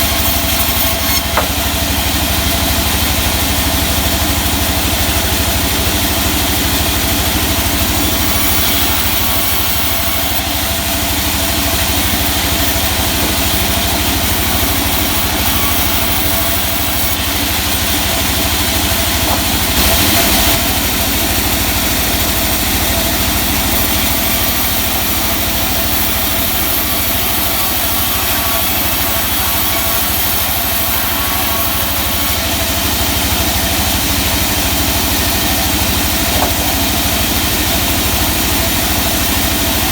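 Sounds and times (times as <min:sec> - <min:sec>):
sawmill machinery hum: 0:00.0 - 0:39.9.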